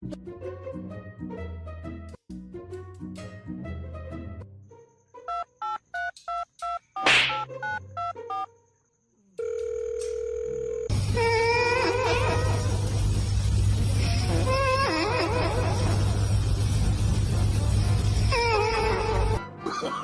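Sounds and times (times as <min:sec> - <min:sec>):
dial tone hum: 0:09.4 - 0:10.9.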